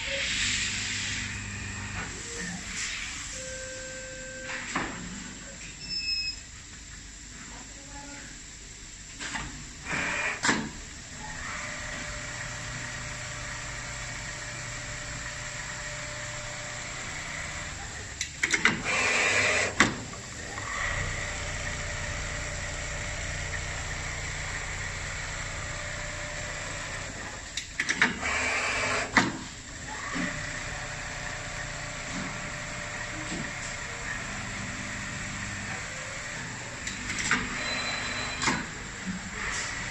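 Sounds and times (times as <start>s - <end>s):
sewing machine hum: 11.4s - 27.3s.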